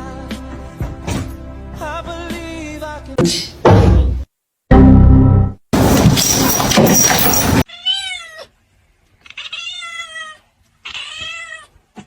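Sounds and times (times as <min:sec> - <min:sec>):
cat meowing: 0:07.7 - 0:08.5, 0:09.2 - 0:11.7.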